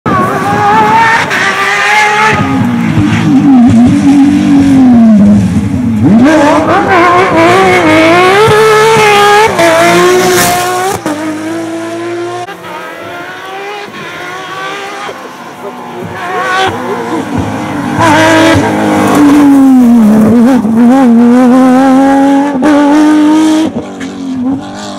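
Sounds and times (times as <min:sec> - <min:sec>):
rally car engine revving: 0:00.1 - 0:24.9.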